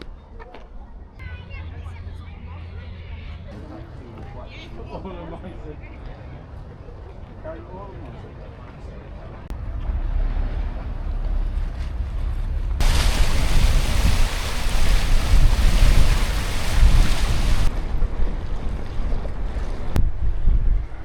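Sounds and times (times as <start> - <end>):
loud rushing hiss: 12.8 - 17.7
wind buffeting microphone: 12.8 - 21.0.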